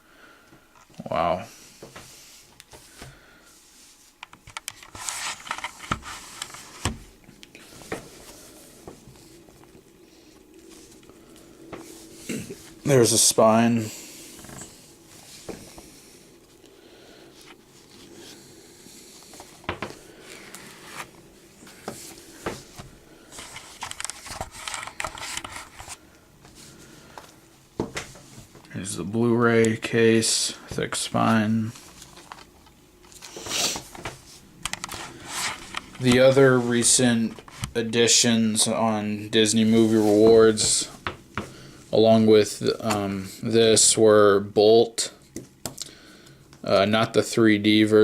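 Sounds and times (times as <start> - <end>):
cardboard crinkly rustling: 3.6 - 16.6, 19.2 - 26.8, 31.1 - 38.9, 39.5 - 41.0.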